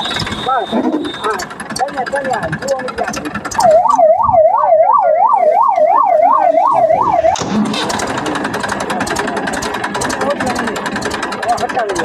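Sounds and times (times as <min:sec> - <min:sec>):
electronic siren warbling: 0:00.0 - 0:01.4, 0:03.5 - 0:07.9
whirring rattling with rapid clicks: 0:00.0 - 0:04.4, 0:07.0 - 0:12.0.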